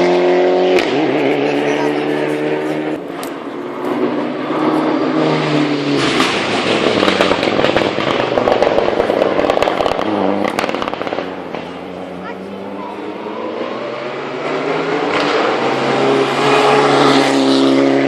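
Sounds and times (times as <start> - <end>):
exhaust crackles: 0.0 - 13.6
car passing with loud rush: 0.0 - 18.0
rally car engine accelerating: 0.0 - 18.0.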